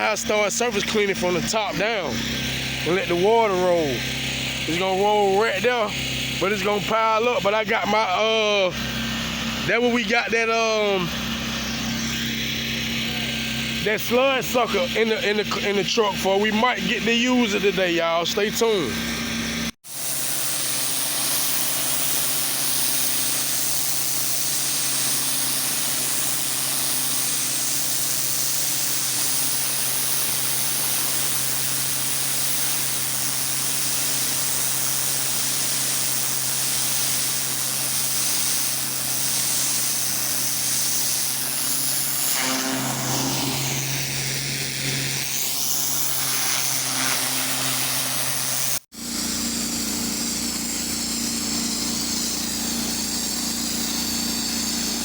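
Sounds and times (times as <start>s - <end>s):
pressure washer engine hum: 0.0s - 55.0s
water spraying on concrete: 19.8s - 55.0s.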